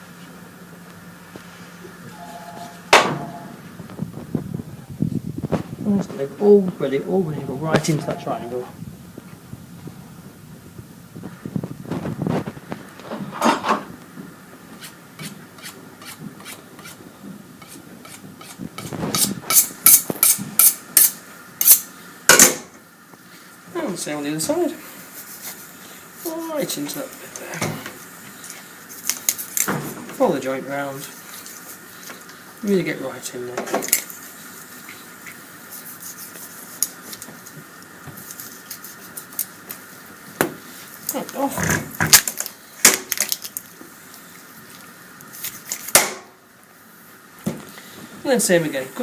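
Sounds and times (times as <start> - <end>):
steady background hiss: 0.0 - 49.0
knife scraping strokes: 14.8 - 17.0, 17.6 - 21.9, 25.1 - 26.4, 34.8 - 37.5, 38.2 - 39.6, 45.3 - 45.9.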